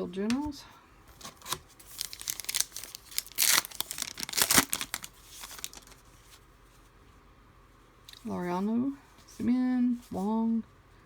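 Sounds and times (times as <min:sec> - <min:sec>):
card pack wrapper tearing and crinkling: 0:01.2 - 0:06.0.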